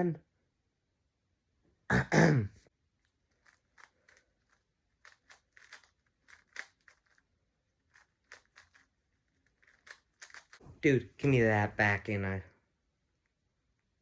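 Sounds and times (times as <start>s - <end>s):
puzzle cube plastic clicks: 3.0s - 10.6s.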